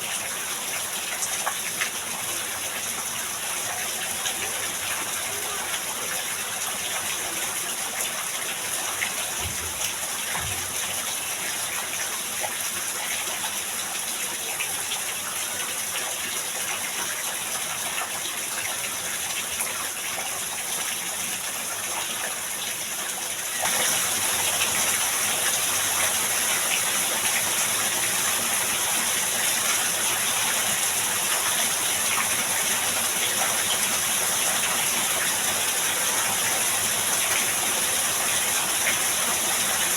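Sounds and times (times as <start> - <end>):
heavy rain pouring: 23.6 - 39.9.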